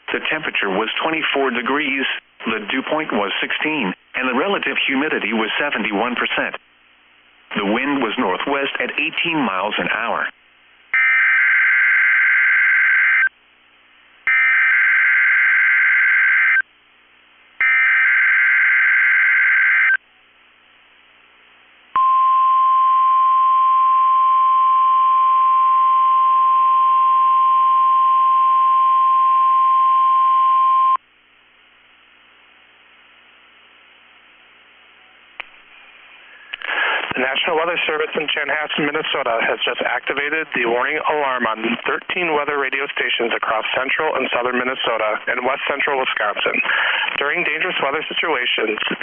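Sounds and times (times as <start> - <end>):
warning alarm tone: 11.0 - 13.3, 14.3 - 16.6, 17.6 - 20.0.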